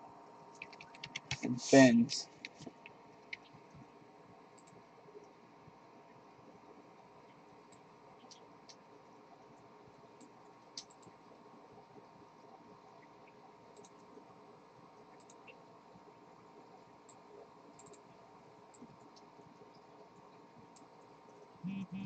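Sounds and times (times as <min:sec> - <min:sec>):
low room hum: 0:00.0 - 0:22.0
computer mouse clicks: 0:00.5 - 0:01.4, 0:02.3 - 0:03.8, 0:04.6 - 0:05.4, 0:07.3 - 0:08.8, 0:09.6 - 0:11.2, 0:13.7 - 0:14.2, 0:15.1 - 0:15.6, 0:17.1 - 0:21.0.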